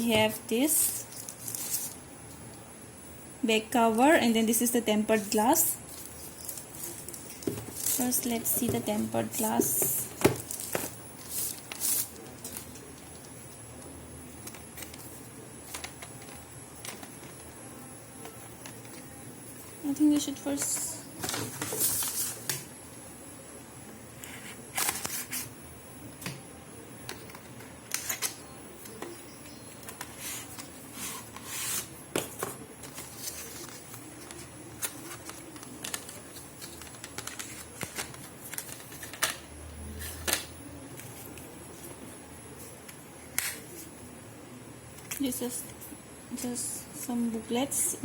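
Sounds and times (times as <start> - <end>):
cardboard packaging being handled: 0.8 - 2.0, 5.2 - 13.3, 21.2 - 22.6, 29.7 - 39.2.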